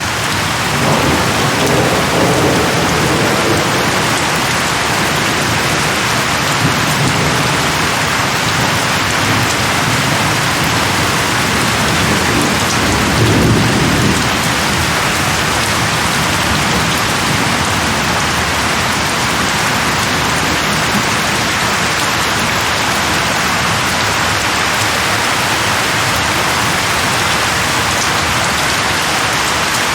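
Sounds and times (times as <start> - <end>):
distant thunder rumbling: 0.0 - 18.0, 24.7 - 28.2
heavy rain: 0.0 - 29.9.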